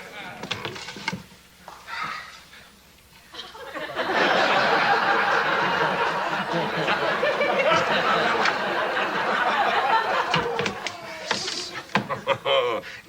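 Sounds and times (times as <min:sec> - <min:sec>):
audience laughing: 0:03.3 - 0:13.0.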